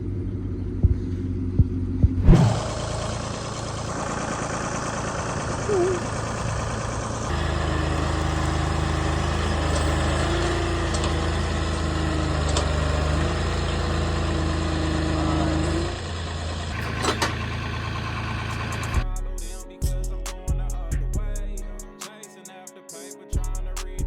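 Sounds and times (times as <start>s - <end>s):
lawn mower engine running: 2.3s - 19.0s.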